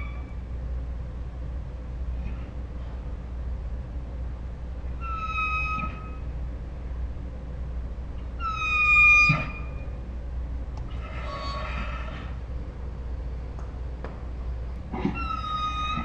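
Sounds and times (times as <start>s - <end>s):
dog whining: 5.0s - 6.2s, 8.4s - 9.8s, 10.9s - 12.4s, 14.9s - 16.0s.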